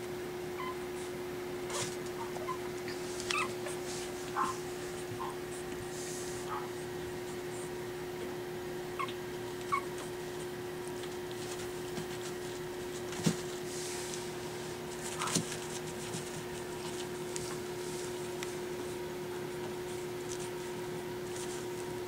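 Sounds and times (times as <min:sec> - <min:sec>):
puppies whimpering: 0:00.6 - 0:00.9, 0:01.7 - 0:05.7, 0:08.9 - 0:10.6
sharp knocks and scuffling: 0:11.0 - 0:18.2.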